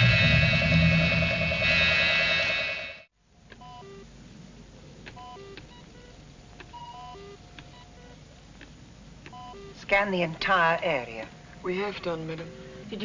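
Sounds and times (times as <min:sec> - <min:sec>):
music: 0:00.0 - 0:02.9
faint hum: 0:00.0 - 0:13.0.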